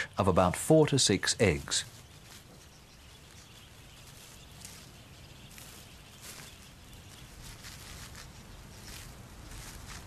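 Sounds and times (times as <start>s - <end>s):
soft rustles and scratches: 5.5s - 10.0s.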